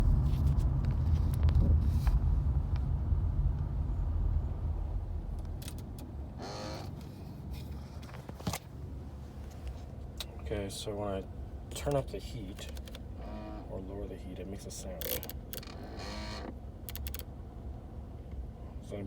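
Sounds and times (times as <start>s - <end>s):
car engine rumble inside cabin: 0.0s - 19.0s
sharp click: 16.9s - 17.3s.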